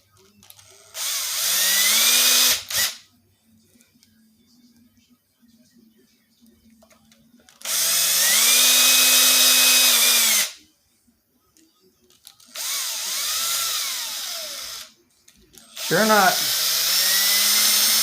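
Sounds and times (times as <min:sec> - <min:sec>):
power drill running: 0:00.9 - 0:03.0, 0:07.6 - 0:10.5, 0:12.5 - 0:14.9, 0:15.7 - 0:18.0.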